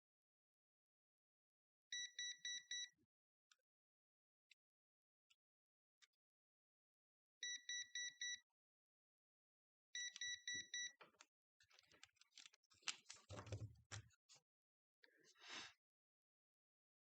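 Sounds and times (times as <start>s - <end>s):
multimeter beeping: 1.9s - 2.9s, 7.4s - 8.4s, 10.0s - 11.0s.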